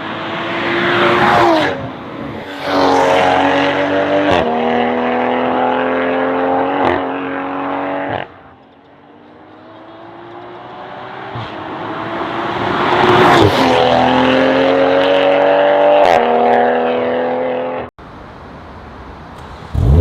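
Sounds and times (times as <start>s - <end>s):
car engine accelerating hard: 2.6s - 8.3s, 9.6s - 17.8s, 19.4s - 20.0s.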